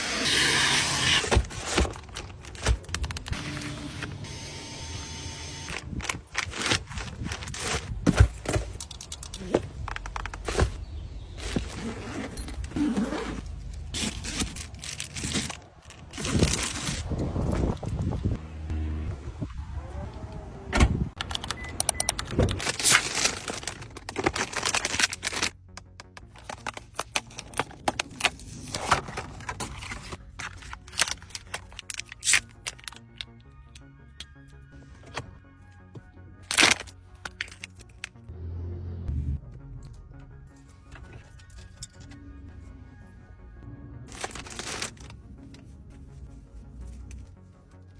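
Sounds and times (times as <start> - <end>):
small objects clicking and rattling: 36.5 - 38.2.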